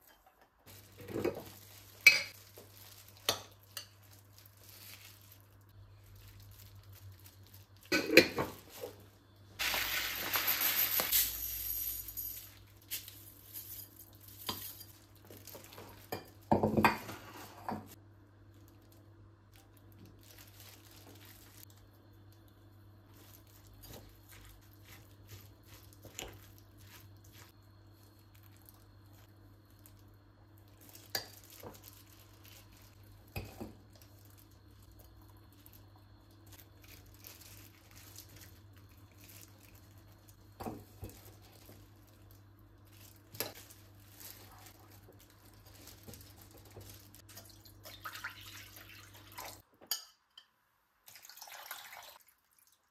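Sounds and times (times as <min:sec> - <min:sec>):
utensils and dishes clattering: 0:09.6 - 0:12.5.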